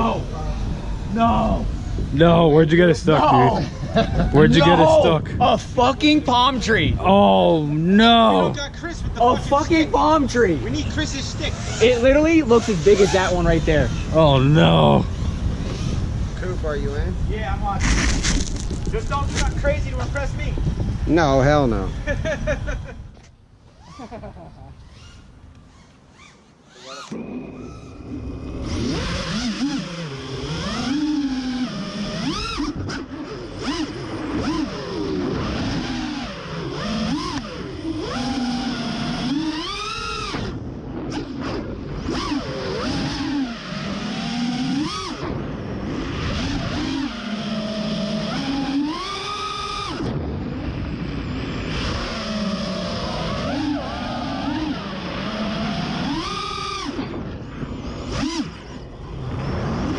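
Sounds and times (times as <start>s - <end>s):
drone motors whining: 0.0s - 59.9s.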